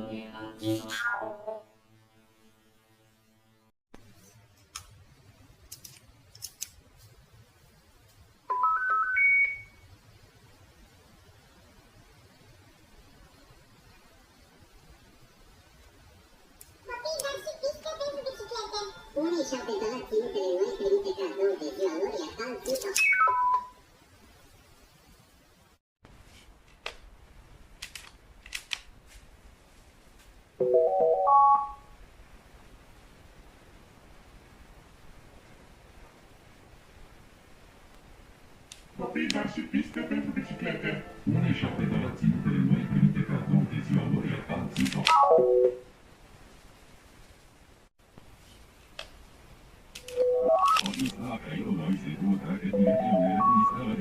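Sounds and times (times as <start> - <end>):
television startup beeps: 8.5 - 9.9, 22.9 - 23.9, 30.6 - 31.9, 45.1 - 45.9, 50.1 - 51.2, 52.2 - 54.0
faint hiss: 9.7 - 23.0, 31.8 - 42.6, 45.8 - 52.8.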